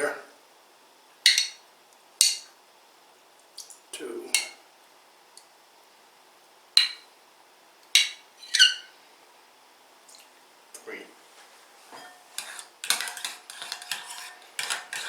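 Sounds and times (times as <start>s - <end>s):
man speaking: 0.0s - 0.3s, 4.0s - 4.6s, 10.8s - 11.2s
teaspoon clinking against a bowl: 1.3s - 1.6s, 2.2s - 2.6s, 4.3s - 4.6s, 6.8s - 7.1s, 8.0s - 8.9s, 12.0s - 15.0s.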